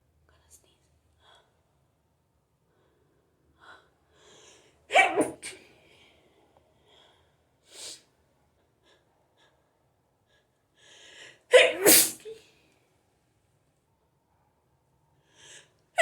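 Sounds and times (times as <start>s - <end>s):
person sneezing: 4.9s - 5.6s, 11.5s - 12.3s.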